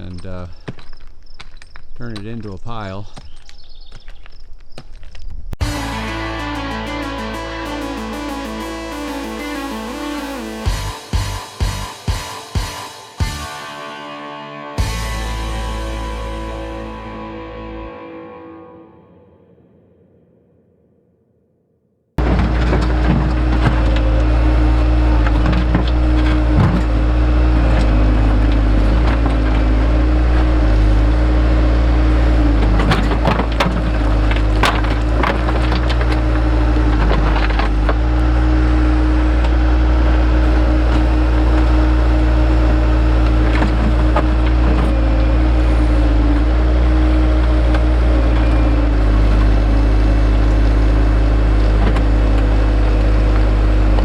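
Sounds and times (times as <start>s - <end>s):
rock knocks and scrapes: 0.1s - 5.4s, 32.6s - 38.0s
digging machine engine running: 22.2s - 54.0s.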